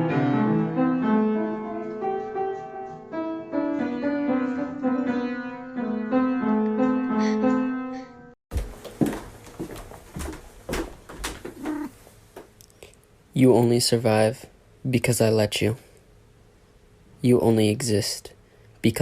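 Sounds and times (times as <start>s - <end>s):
piano music: 0.0s - 8.4s.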